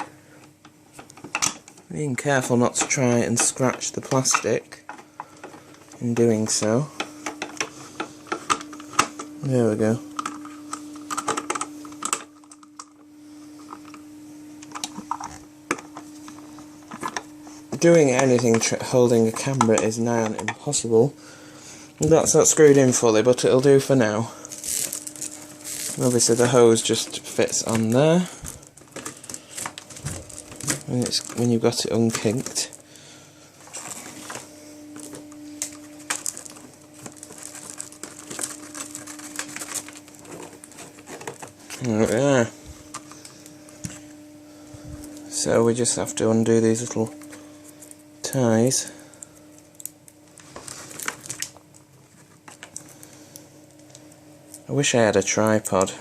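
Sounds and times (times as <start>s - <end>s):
steady low hum: 0.0s - 56.0s
plastic parts clicking and tapping: 2.8s - 9.3s.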